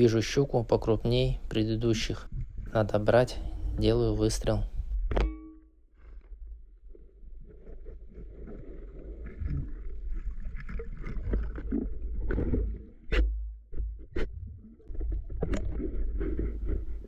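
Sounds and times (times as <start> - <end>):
muffled underwater rumbling: 0.0 - 5.2, 6.1 - 17.0.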